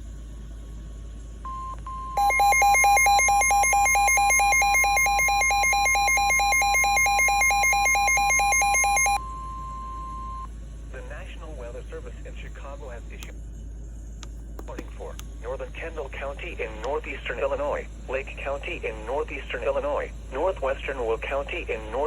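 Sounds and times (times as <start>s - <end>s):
two-pitch alarm: 1.5s - 10.5s.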